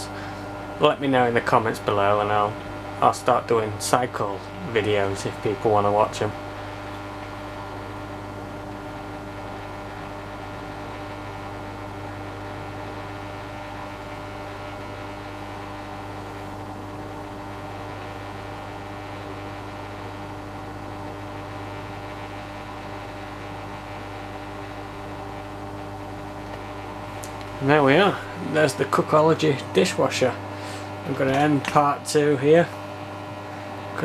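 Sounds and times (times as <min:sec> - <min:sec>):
dishwasher humming: 0:26.1 - 0:32.8.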